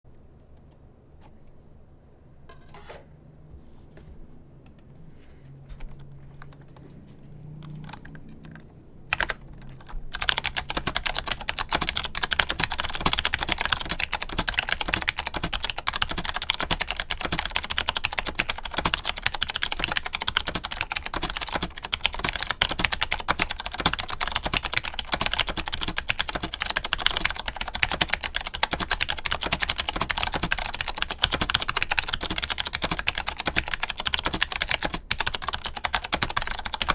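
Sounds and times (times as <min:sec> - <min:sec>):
clicky mechanical keyboard typing: 0:07.6 - 0:36.9.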